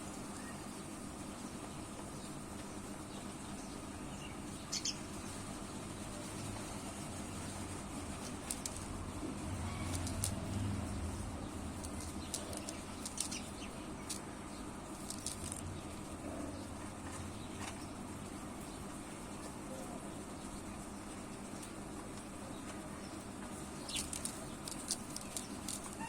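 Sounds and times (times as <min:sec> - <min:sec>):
wings fluttering: 0:07.0 - 0:15.7, 0:23.6 - 0:26.0
parrots clicking: 0:08.2 - 0:10.6, 0:11.6 - 0:14.3, 0:15.0 - 0:15.6, 0:23.8 - 0:26.0.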